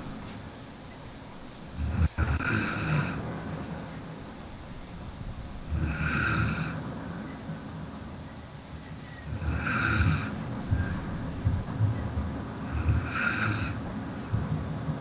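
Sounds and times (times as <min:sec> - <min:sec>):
man snoring: 0:01.8 - 0:03.2, 0:05.7 - 0:06.8, 0:09.3 - 0:10.4, 0:12.6 - 0:13.8.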